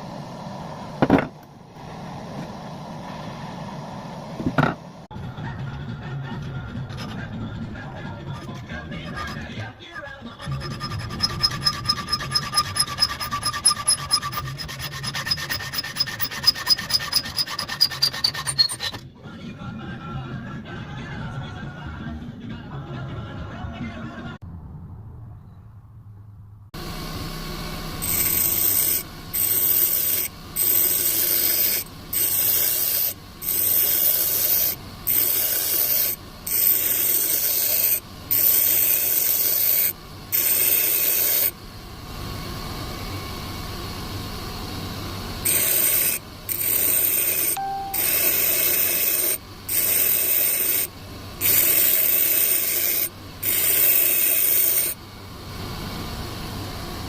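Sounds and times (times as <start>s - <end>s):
steady background hum: 0.0s - 23.7s, 24.3s - 57.0s
metal being rubbed abrasively: 6.8s - 19.0s, 28.0s - 41.5s, 45.5s - 55.0s.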